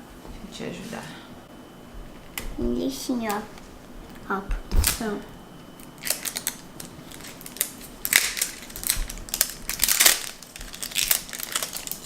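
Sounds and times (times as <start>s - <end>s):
plastic wrapping crinkling: 6.0s - 12.0s.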